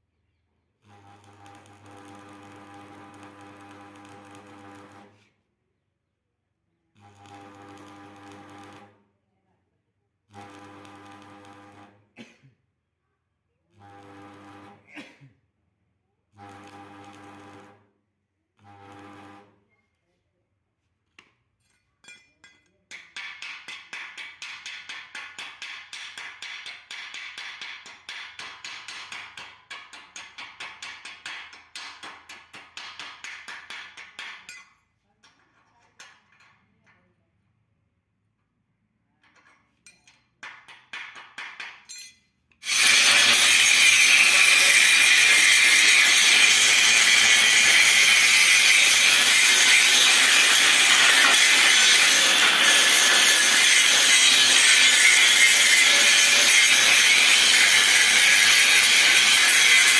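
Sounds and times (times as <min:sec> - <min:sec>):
angle grinder on metal: 0:00.9 - 0:05.2, 0:07.0 - 0:08.9, 0:10.3 - 0:11.9, 0:16.4 - 0:17.7, 0:18.6 - 0:19.5, 0:42.6 - 0:59.9
scraping and clinking on metal: 0:21.6 - 0:22.8.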